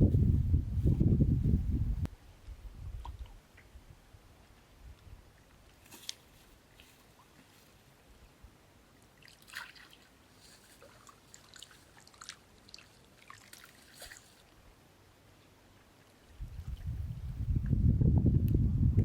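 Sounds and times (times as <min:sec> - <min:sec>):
water drips and splashes: 0:09.0 - 0:14.6.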